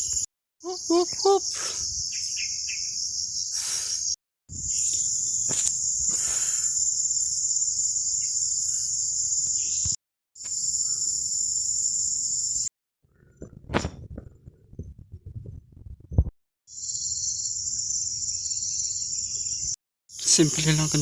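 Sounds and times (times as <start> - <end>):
insects droning: 0.0 - 12.7, 16.7 - 21.0.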